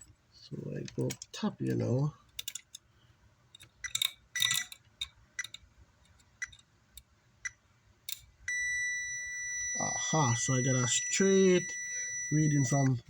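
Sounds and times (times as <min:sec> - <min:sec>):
probe tips clicking on metal leads: 0:00.9 - 0:02.9
multimeter continuity beep: 0:08.5 - 0:13.0.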